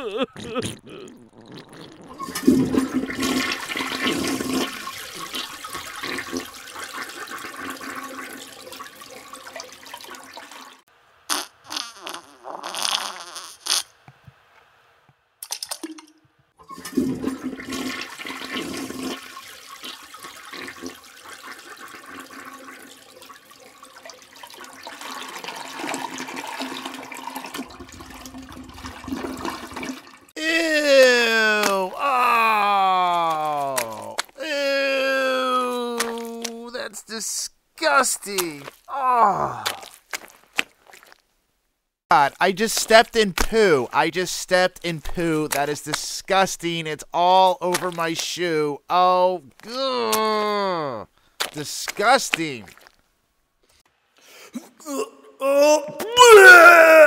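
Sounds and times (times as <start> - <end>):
water splashing: 0.5 - 10.8, 15.8 - 36.9, 37.8 - 41.2, 47.2 - 48.2, 49.9 - 53.0
toilet flushing: 1.4 - 10.8, 16.6 - 30.4.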